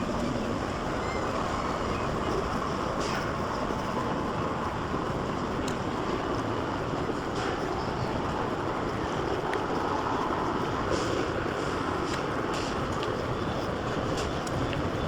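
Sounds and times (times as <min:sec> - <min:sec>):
outdoor background noise: 0:00.0 - 0:15.0.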